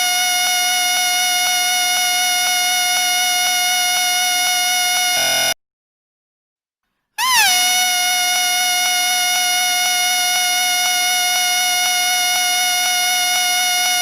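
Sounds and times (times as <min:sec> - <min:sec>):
shrill whistle: 0:07.2 - 0:14.0.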